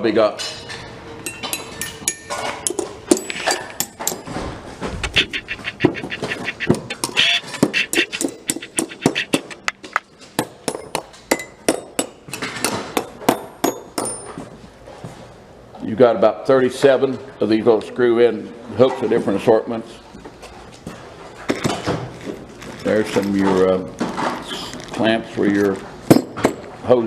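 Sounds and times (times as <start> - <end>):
metal hooks clinking and rattling: 0.5 - 4.4, 22.6 - 24.3.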